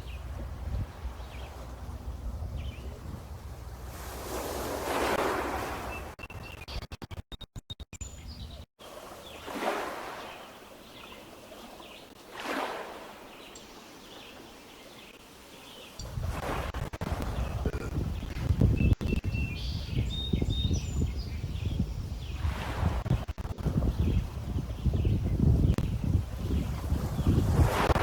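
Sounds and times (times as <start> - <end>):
waves lapping against stones: 0.0 - 6.2, 8.8 - 18.6, 22.4 - 24.6, 25.9 - 28.0.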